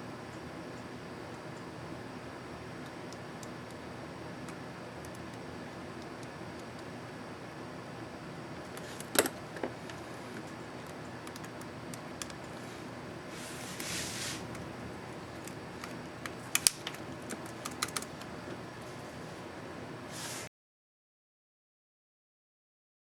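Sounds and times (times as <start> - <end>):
scraping rustle: 12.7 - 14.5
laptop key clicking: 15.4 - 18.3.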